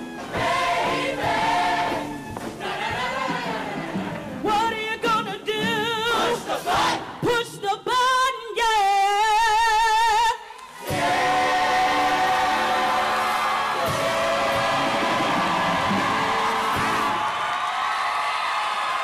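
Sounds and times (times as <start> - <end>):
choir singing: 0.2 - 4.3, 6.0 - 7.2, 10.8 - 17.2
audience applause and cheering: 10.5 - 19.0.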